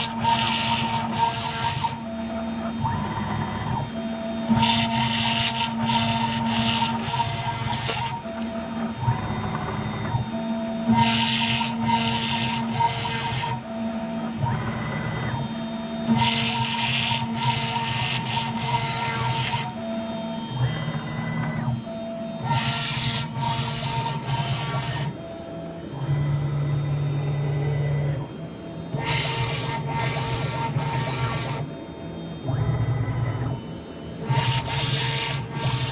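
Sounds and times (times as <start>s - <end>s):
milling machine cutting hiss: 0.0s - 2.0s, 4.5s - 8.3s, 10.8s - 13.6s, 16.1s - 19.8s, 34.2s - 35.9s
motor hum: 0.0s - 35.9s.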